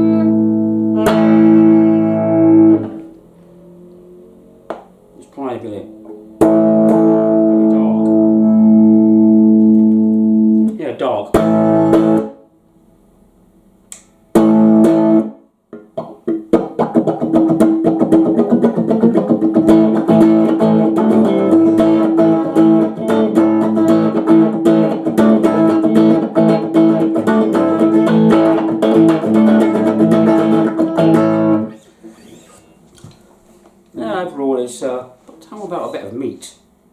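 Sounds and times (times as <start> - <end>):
electric guitar through amp: 0.0 - 12.4, 14.3 - 15.4, 16.0 - 31.8.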